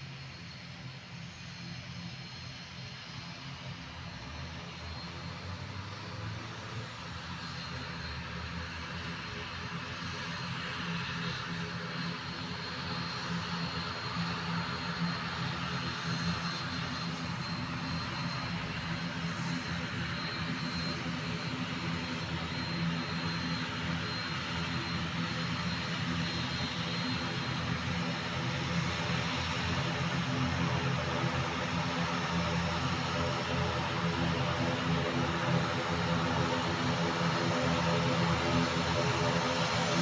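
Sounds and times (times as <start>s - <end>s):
turboprop engines running: 0.1s - 40.0s.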